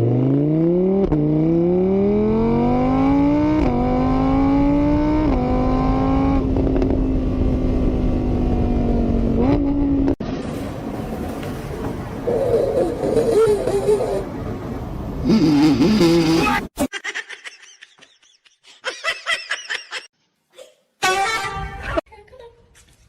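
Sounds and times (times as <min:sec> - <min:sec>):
vehicle engine accelerating: 0:00.0 - 0:16.3.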